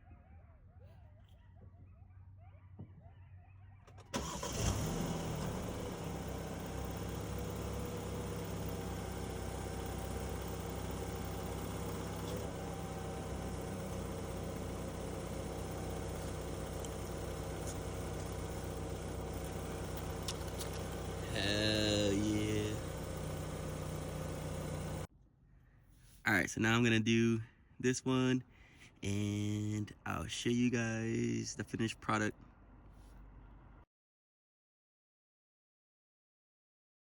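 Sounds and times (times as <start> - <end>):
car engine starting and idling: 3.9 - 25.1.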